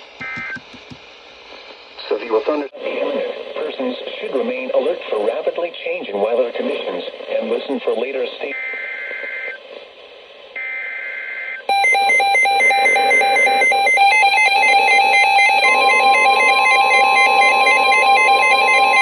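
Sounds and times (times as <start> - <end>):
steady high attention tone: 11.7 - 19.0
warbling alert alarm: 11.7 - 19.0.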